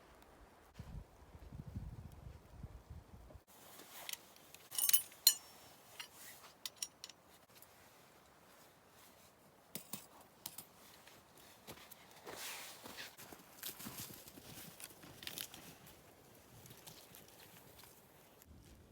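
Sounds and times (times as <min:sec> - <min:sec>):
clinks of small hard items: 0:03.9 - 0:07.3.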